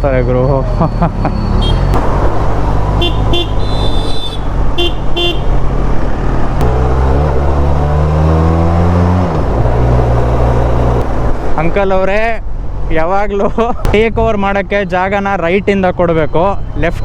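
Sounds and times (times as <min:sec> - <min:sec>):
horn beeps: 0:00.2 - 0:02.0, 0:02.9 - 0:05.5
motorcycle engine running and revving: 0:00.8 - 0:11.5.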